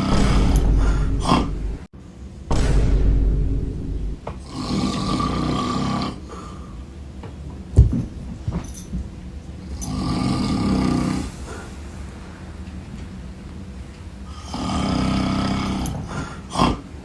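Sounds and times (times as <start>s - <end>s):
man snoring: 0.0s - 1.9s, 4.4s - 6.5s, 9.8s - 11.5s, 14.3s - 16.9s
sharp thump: 0.0s - 1.9s, 2.5s - 4.4s.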